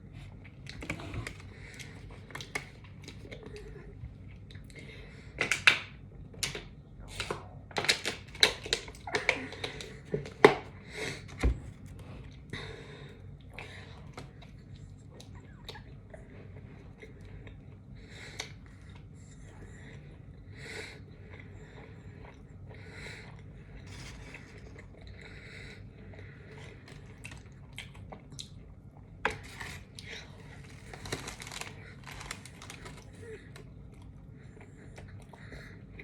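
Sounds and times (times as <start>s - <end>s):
crisp crunching of sandwich: 29.4s - 33.2s.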